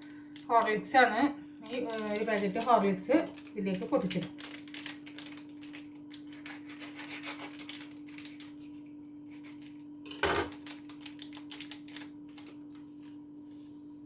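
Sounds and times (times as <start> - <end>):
packet crinkling and tearing: 1.7 - 9.8, 10.5 - 12.8.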